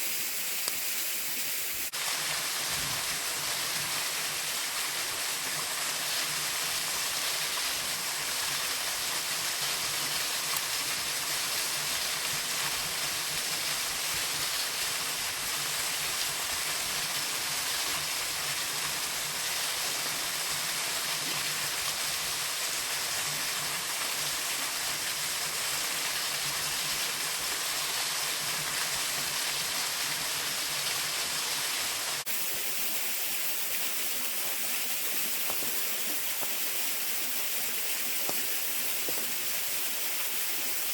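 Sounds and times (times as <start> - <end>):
waterfall rushing: 32.3 - 40.9.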